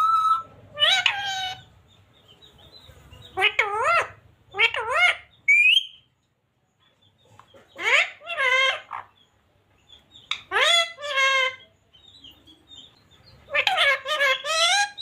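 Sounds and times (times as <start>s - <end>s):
parrot talking: 0.0s - 1.7s, 3.3s - 6.0s, 7.8s - 9.1s, 10.3s - 11.7s, 13.5s - 15.0s.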